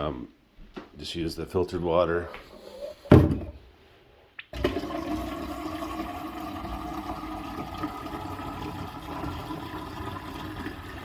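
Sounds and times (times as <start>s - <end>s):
water pouring into tank: 4.5s - 11.0s.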